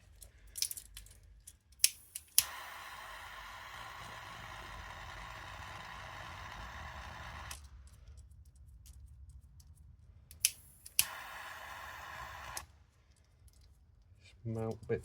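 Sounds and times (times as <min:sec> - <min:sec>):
sharp clicks: 0:00.2 - 0:09.0, 0:10.3 - 0:13.8
gas torch hissing: 0:02.0 - 0:07.6, 0:10.5 - 0:12.7.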